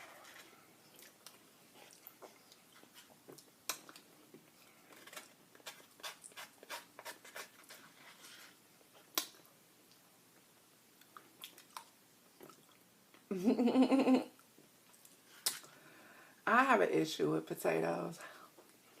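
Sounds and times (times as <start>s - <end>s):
chewing and mouth sounds: 0.9s - 6.5s, 11.0s - 13.3s.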